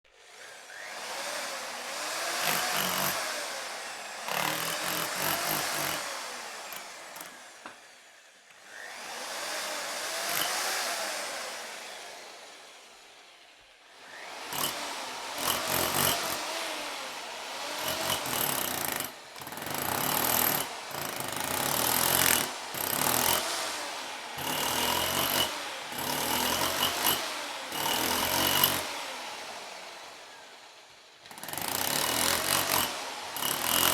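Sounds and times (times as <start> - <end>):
jackhammer breaking concrete: 2.4 - 3.3, 4.3 - 6.1, 6.7 - 7.4, 10.3 - 10.6, 14.5 - 14.8, 15.4 - 16.5, 17.8 - 23.5, 24.4 - 28.9, 31.3 - 33.9.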